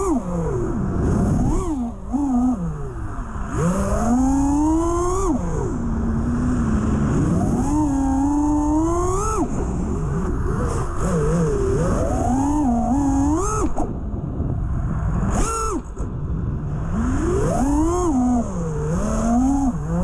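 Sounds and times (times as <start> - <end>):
drone motors whining: 0.0 - 14.0, 15.1 - 20.0.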